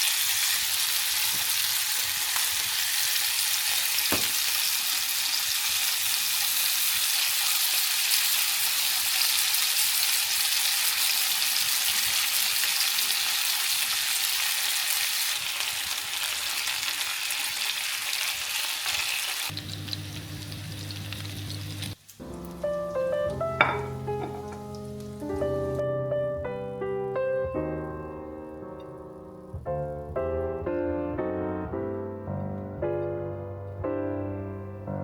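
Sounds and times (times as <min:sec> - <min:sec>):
food sizzling in a pan: 0:00.0 - 0:25.8.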